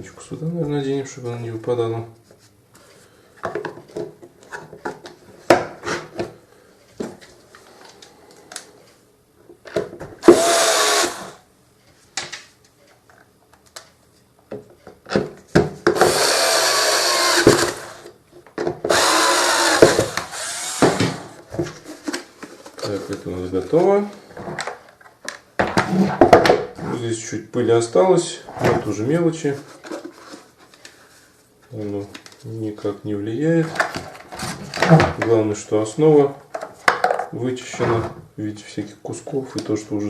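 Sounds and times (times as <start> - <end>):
electric screwdriver driving screws: 10.2 - 11.4, 16.0 - 18.1, 18.9 - 21.4
plastic parts clicking and knocking: 36.5 - 37.4.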